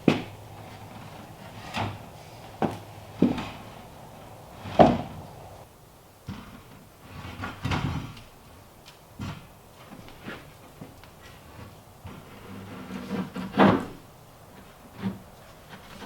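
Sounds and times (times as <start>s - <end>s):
wood knocking and clunking: 0.0s - 5.6s.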